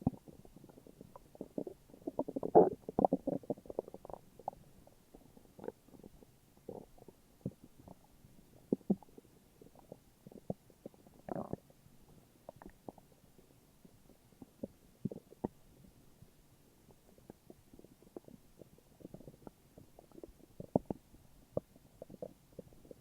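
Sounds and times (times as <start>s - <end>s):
stomach growling: 0.0s - 13.2s, 13.8s - 16.0s, 16.8s - 23.0s.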